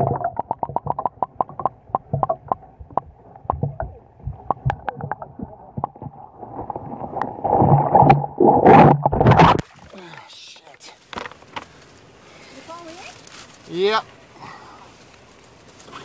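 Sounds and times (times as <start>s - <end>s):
sharp clicks and knocks: 0.0s - 6.2s.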